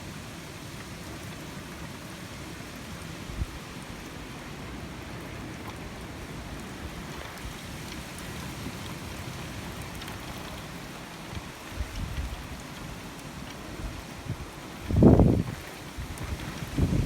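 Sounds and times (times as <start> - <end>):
rain sleet and hail falling: 0.0 - 17.0
low rumble of strong wind: 2.5 - 17.0.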